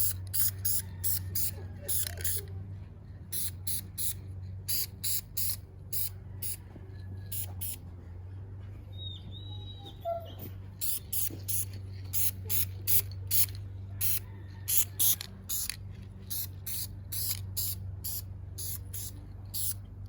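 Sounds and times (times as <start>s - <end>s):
aerosol spray bursts: 0.0s - 2.4s, 7.3s - 7.8s, 10.8s - 19.8s
steady low hum: 0.0s - 20.0s.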